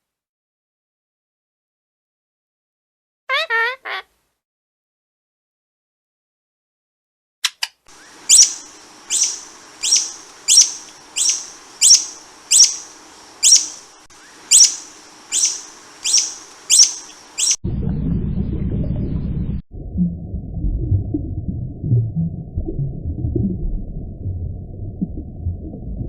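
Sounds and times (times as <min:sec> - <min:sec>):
faint background hiss: 0:07.9 - 0:17.6
small bird chirping: 0:08.0 - 0:17.6
loud low rumble: 0:17.7 - 0:26.0.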